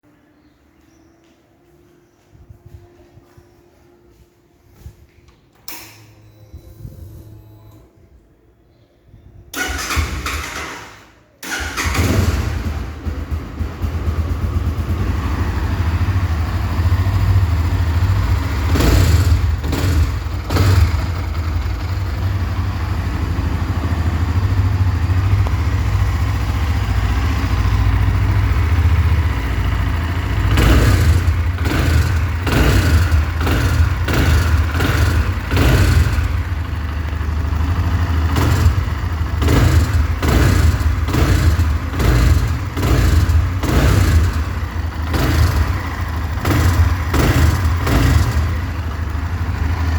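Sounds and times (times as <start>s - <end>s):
motorcycle engine idling: 11.5s - 49.9s.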